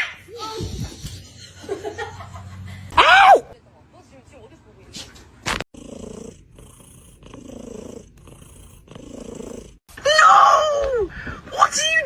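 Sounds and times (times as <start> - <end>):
cat purring: 5.7 - 9.9.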